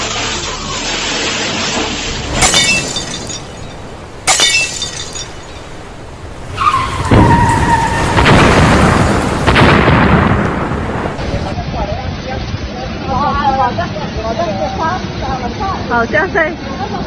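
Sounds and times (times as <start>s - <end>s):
storm noise: 2.2s - 11.6s
sharp cracks with glassy ringing: 2.3s - 6.2s.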